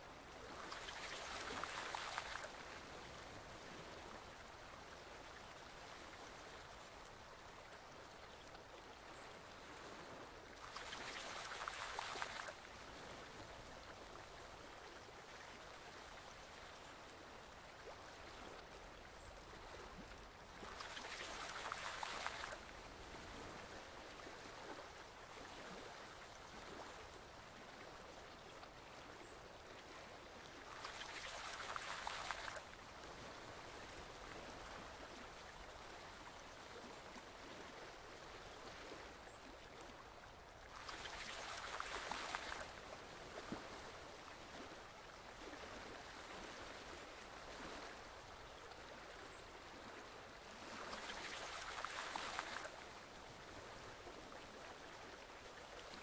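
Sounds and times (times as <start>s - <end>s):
stream flowing: 0.0s - 56.0s
surges of rushing water: 0.2s - 7.2s, 9.8s - 14.6s, 17.8s - 27.5s, 30.4s - 36.3s, 40.6s - 49.1s, 49.8s - 56.0s.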